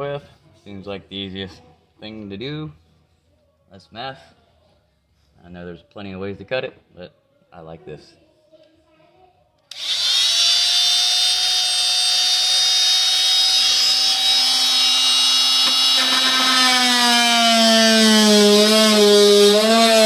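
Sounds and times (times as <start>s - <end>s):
oscillating multi-tool buzzing: 9.7s - 20.0s.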